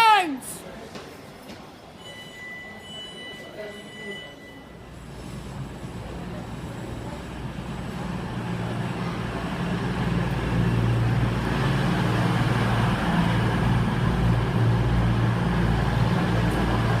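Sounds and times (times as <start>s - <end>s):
train running with low hum: 3.8s - 17.0s.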